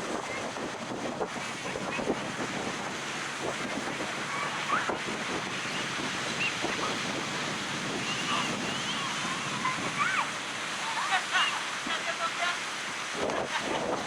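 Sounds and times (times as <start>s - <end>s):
waves breaking on a beach: 0.0s - 14.0s.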